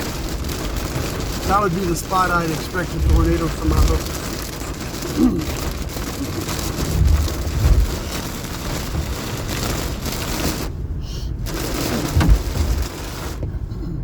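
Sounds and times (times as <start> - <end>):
rain and hail on car roof: 0.0 - 13.6
low thumps: 2.5 - 4.9, 5.5 - 9.9, 11.8 - 13.6.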